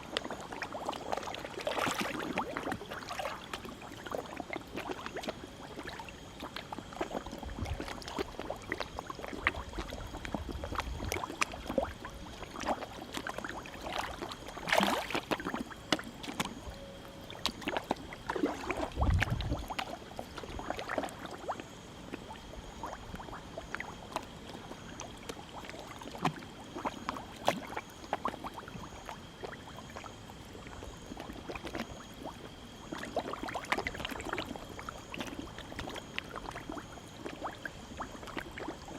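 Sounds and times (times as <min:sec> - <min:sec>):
fish splashing at water surface: 0:06.9 - 0:16.6.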